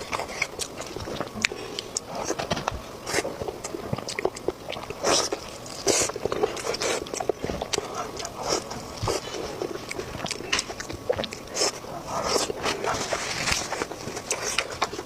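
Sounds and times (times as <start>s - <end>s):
person chewing food: 0.0s - 15.0s
slurping or crunching: 0.0s - 15.0s.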